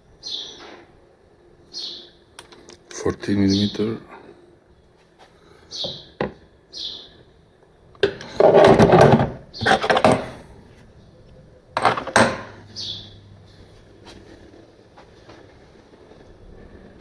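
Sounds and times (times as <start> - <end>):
hard objects clattering: 8.0 - 10.6, 11.8 - 12.8.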